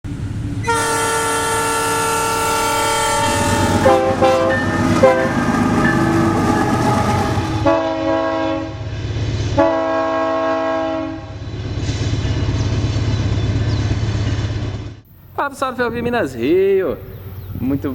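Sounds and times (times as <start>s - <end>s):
low engine rumble: 0.1s - 9.4s
locomotive air horn blasts: 0.6s - 8.8s, 9.6s - 11.4s.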